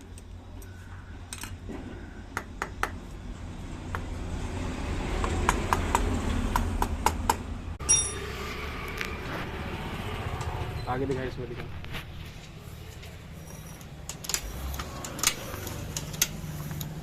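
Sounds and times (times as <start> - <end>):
metal tools clinking: 7.8 - 8.3.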